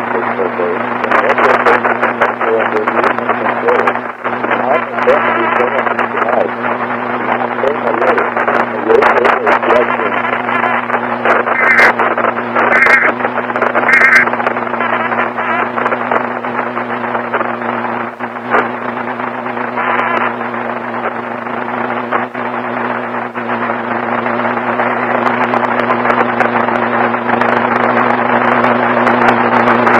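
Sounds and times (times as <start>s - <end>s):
crackles and clicks: 0.0s - 23.6s
low electrical hum: 0.0s - 29.5s
loud static: 0.0s - 29.9s.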